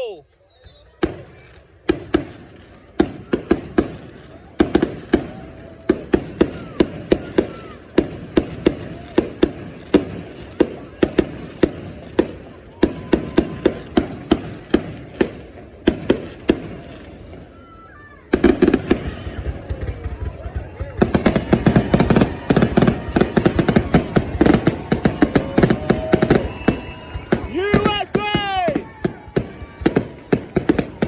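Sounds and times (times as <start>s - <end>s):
fireworks exploding: 0.0s - 31.0s.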